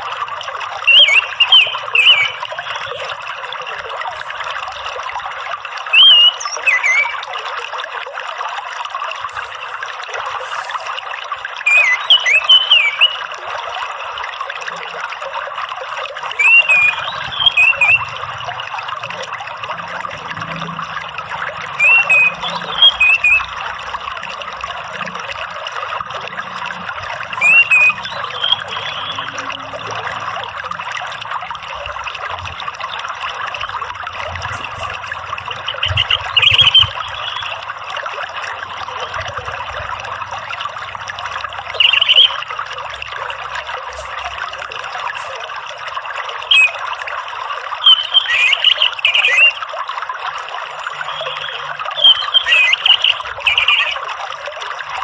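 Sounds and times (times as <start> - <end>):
trickling water: 0.0 - 55.0
thrush singing whistled notes: 0.8 - 3.3, 5.9 - 7.3, 11.6 - 13.3, 16.1 - 18.8, 21.6 - 23.8, 27.2 - 30.1, 33.5 - 37.7, 41.7 - 42.5, 46.4 - 47.0, 47.8 - 49.6, 50.8 - 54.1.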